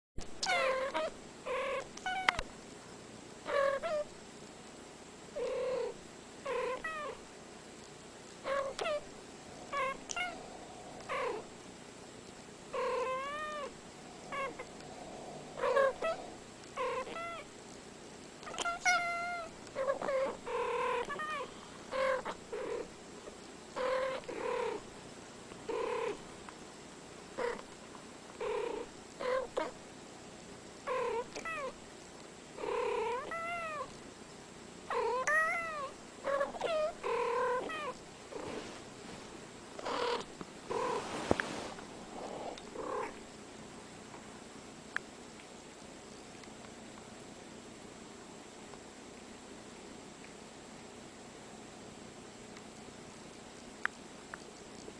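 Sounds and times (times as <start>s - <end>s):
cats chirping meows: 6.5s - 7.2s, 8.4s - 11.5s, 12.8s - 17.5s, 18.4s - 22.4s, 33.0s - 33.9s, 35.0s - 38.0s.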